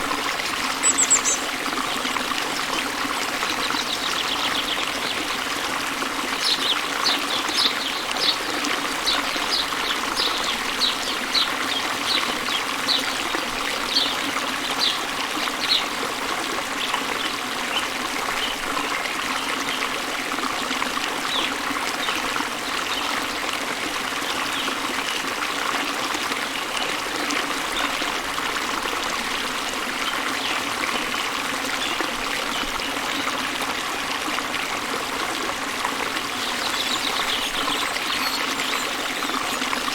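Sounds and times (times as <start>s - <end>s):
stream running water: 0.0s - 39.9s
bird chirping: 0.8s - 1.5s.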